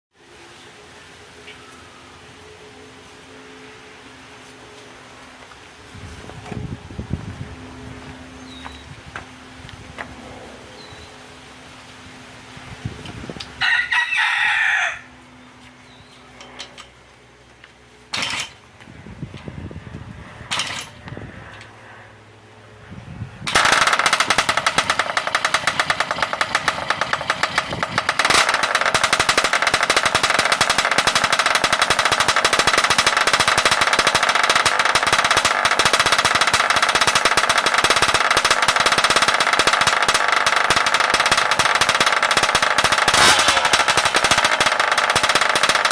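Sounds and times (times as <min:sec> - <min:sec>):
scooter engine rattling: 0:18.1 - 0:18.7, 0:20.4 - 0:21.1, 0:23.4 - 0:45.9.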